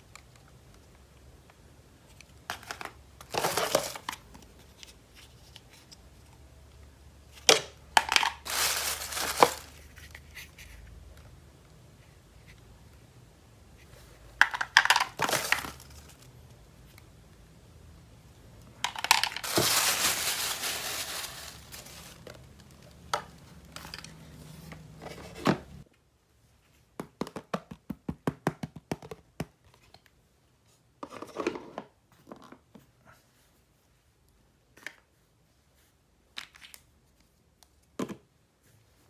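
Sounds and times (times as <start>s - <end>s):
plastic packaging tearing and crinkling: 3.3s - 4.1s, 8.2s - 10.0s, 14.9s - 16.3s, 18.9s - 22.5s.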